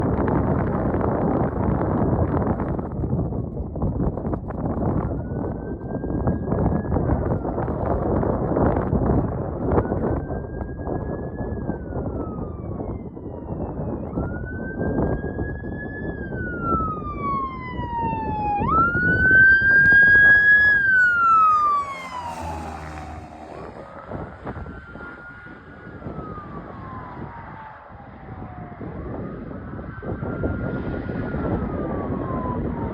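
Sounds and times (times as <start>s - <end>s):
steady traffic noise: 0.0s - 32.9s
ambulance siren wailing: 10.2s - 32.9s.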